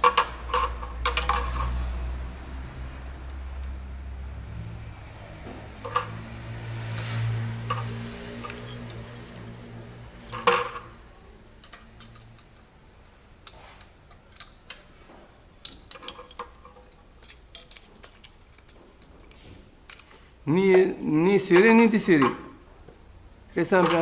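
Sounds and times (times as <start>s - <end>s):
metal tools clinking: 10.3s - 11.0s, 11.6s - 12.6s, 15.6s - 22.4s.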